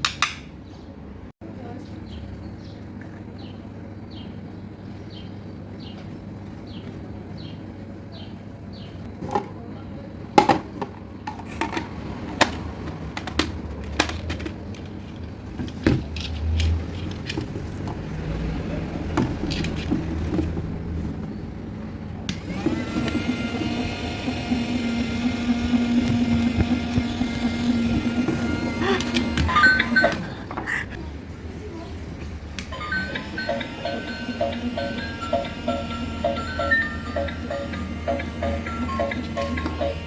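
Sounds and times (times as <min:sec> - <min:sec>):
plastic toy clicks and knocks: 0:11.3 - 0:14.9
steady electronic tone: 0:32.7 - 0:40.0.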